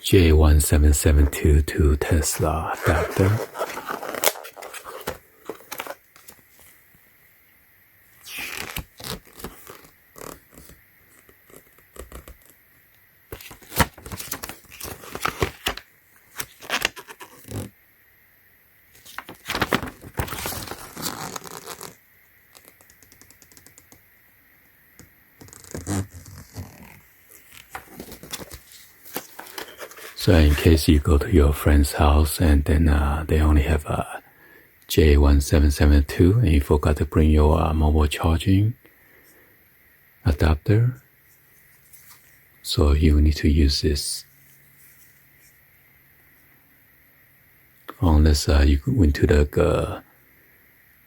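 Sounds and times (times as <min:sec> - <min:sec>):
plastic scrapes rubs and clicks: 0:02.3 - 0:06.4, 0:20.4 - 0:24.0, 0:25.4 - 0:30.2.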